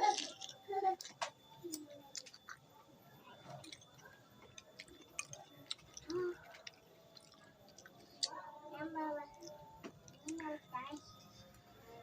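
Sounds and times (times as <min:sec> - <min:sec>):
chewing and mouth sounds: 0:00.0 - 0:08.6.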